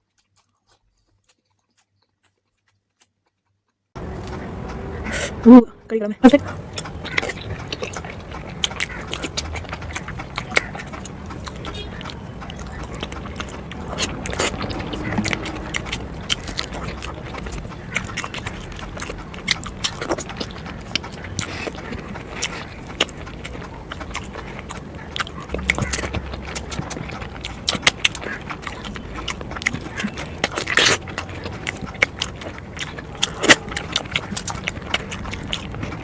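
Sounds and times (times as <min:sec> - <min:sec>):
person chewing food: 0:00.0 - 0:05.6, 0:06.2 - 0:36.0.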